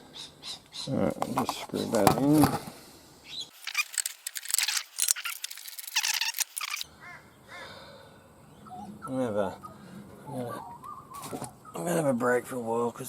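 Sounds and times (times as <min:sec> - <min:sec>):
birds chirping faintly: 0:03.2 - 0:13.0
metallic scrapes of screwing: 0:03.5 - 0:06.8.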